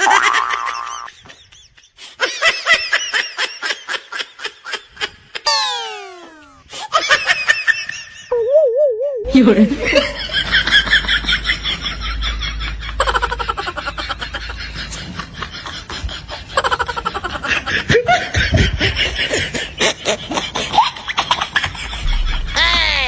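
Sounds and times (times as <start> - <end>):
dubbed-in laughter: 9.9 - 23.0.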